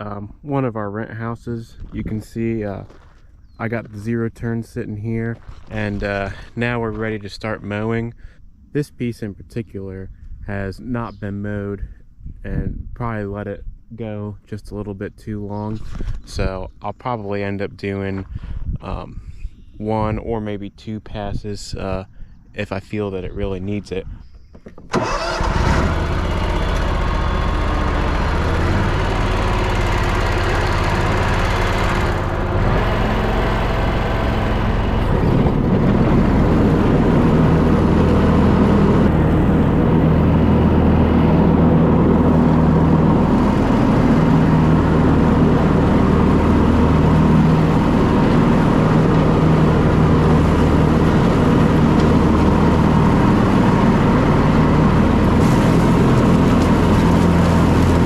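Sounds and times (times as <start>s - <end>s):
riding mower engine running: 24.9s - 58.0s.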